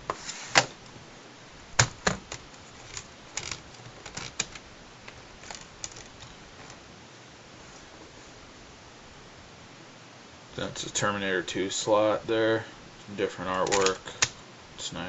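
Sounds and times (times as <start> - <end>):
plastic case and discs clicking: 1.8 - 6.8, 13.5 - 14.4.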